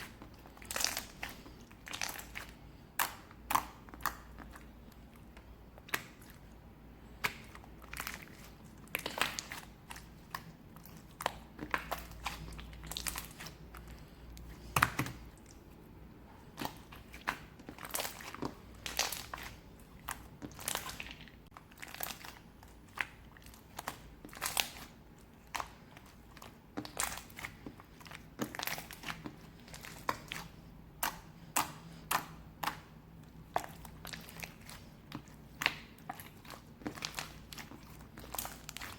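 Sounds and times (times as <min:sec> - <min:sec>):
crisp crunching and crackling: 0:07.2 - 0:15.6, 0:16.6 - 0:38.9.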